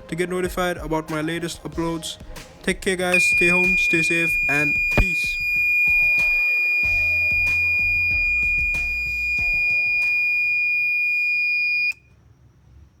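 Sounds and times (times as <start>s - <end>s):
background music with beat: 0.0s - 10.8s
high-pitched alarm buzzer: 3.2s - 12.0s.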